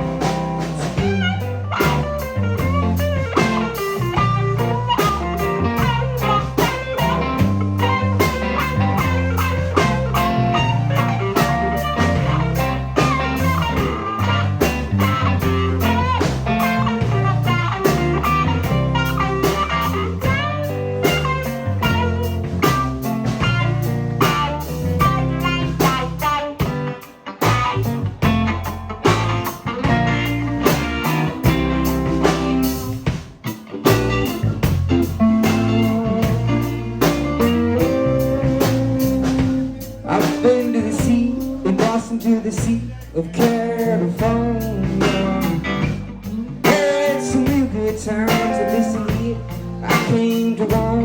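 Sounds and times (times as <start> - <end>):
bass guitar: 0.0 - 51.0
drum kit: 0.0 - 51.0
electric guitar lines: 0.0 - 51.0.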